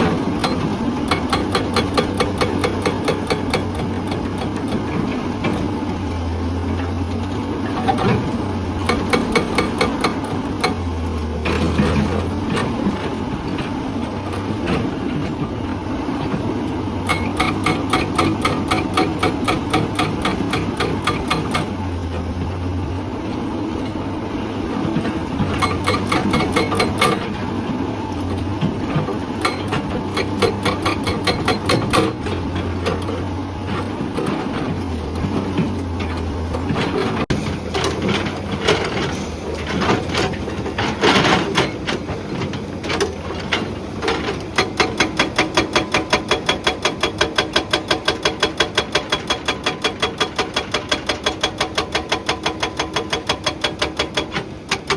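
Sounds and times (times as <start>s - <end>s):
hydraulic breaker pounding rock: 0.0s - 22.8s, 24.6s - 54.9s
diesel engine drone: 0.0s - 48.9s.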